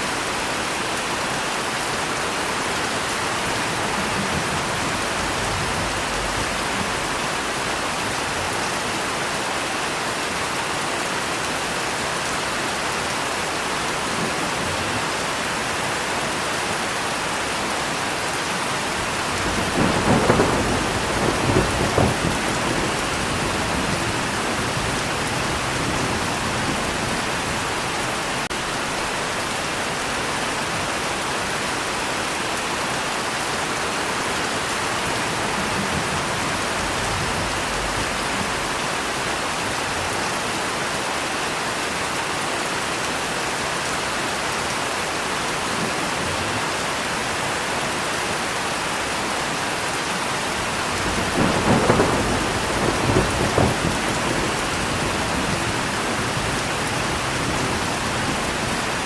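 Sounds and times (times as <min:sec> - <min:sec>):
heavy rain: 0:00.0 - 0:59.0
crackling thunder: 0:02.4 - 0:08.7, 0:18.8 - 0:28.5, 0:34.6 - 0:39.4, 0:50.6 - 0:59.0.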